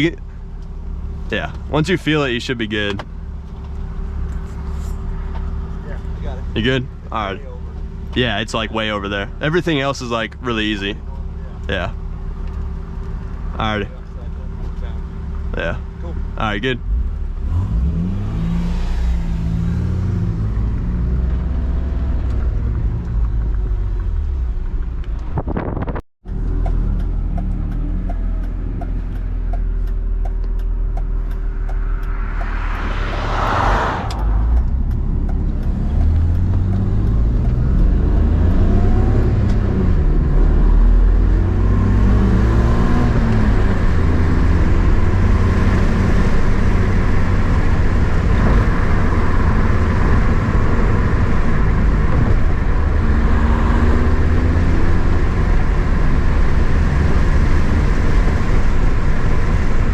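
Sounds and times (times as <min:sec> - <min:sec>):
car engine accelerating through gears: 0:16.8 - 0:59.9
brief rushing whoosh: 0:32.2 - 0:34.8.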